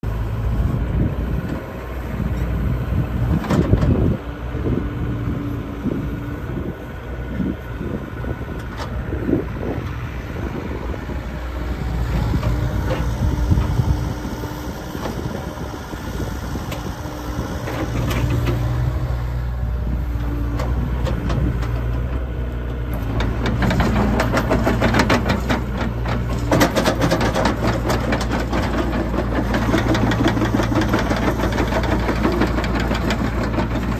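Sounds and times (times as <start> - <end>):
excavator diesel engine running: 0.0 - 33.9
knocks and clanks: 23.0 - 33.9.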